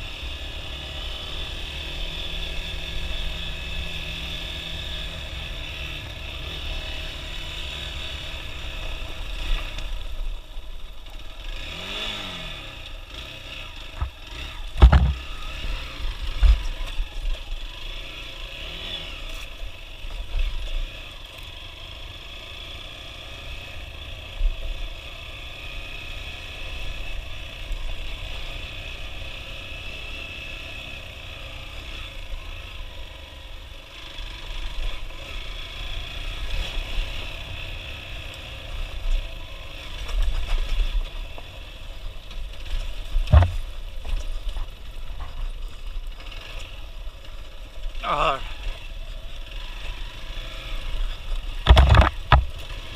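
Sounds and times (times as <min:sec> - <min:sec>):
motorcycle engine revving: 0:00.0 - 0:10.2, 0:11.1 - 0:52.9
knocks and clatter from bumps: 0:14.0 - 0:15.2, 0:43.2 - 0:45.4, 0:51.6 - 0:52.6.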